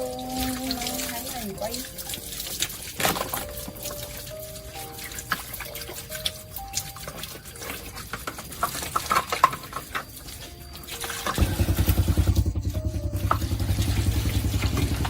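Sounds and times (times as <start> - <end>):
soft background music: 0.0 - 15.0
loud low pulsing buzz: 11.4 - 15.0.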